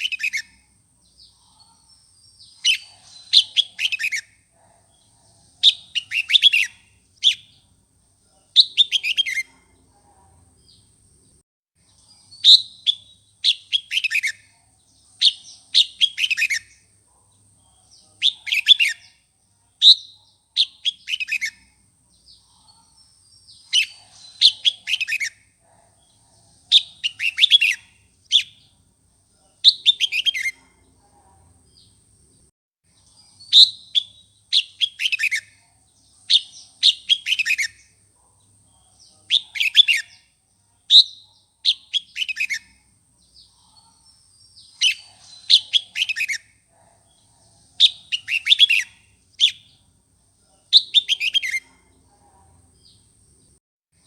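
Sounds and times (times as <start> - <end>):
bulbul whistled song: 5.6 - 7.6, 8.6 - 9.5, 12.3 - 14.5, 26.7 - 28.6, 29.6 - 30.6, 33.4 - 35.6, 40.9 - 42.8, 47.8 - 49.7, 50.8 - 51.6.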